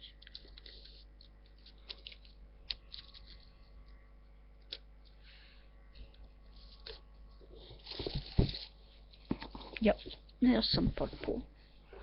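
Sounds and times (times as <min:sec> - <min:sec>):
paper rustling: 0:00.2 - 0:03.7, 0:06.5 - 0:10.2.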